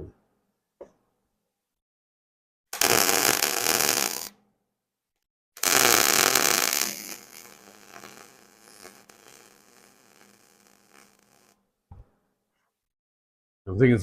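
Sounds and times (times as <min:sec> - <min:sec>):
welder arc crackling: 0:02.8 - 0:04.3, 0:05.6 - 0:11.6.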